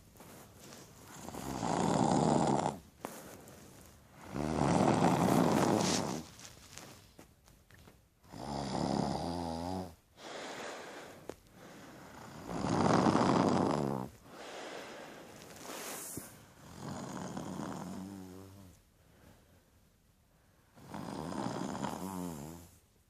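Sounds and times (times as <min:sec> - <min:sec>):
person snoring: 0:01.2 - 0:02.8, 0:04.2 - 0:06.3, 0:08.3 - 0:10.8, 0:11.9 - 0:14.6, 0:15.7 - 0:18.7, 0:20.8 - 0:22.7
person breathing: 0:03.0 - 0:06.3, 0:10.1 - 0:12.4, 0:14.2 - 0:16.7.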